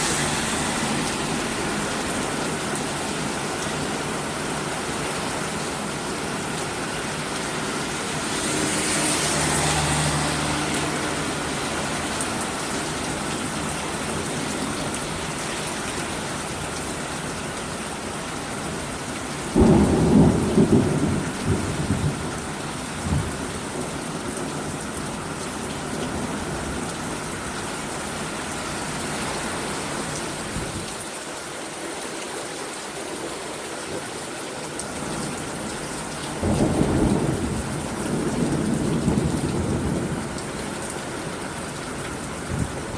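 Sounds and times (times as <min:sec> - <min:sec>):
heavy rain pouring: 0:00.0 - 0:42.9
thunderclap rumbling: 0:19.6 - 0:22.4, 0:36.4 - 0:40.4.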